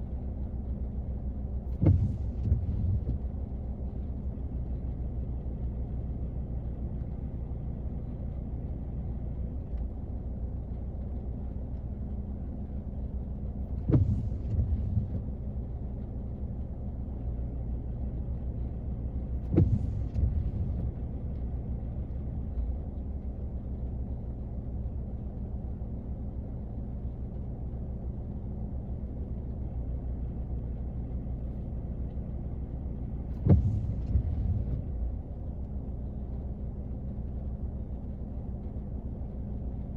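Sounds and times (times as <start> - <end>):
rain on a car: 0.0 - 39.9
sharp cracks with rumble: 13.8 - 15.4, 19.4 - 21.5, 33.2 - 36.4.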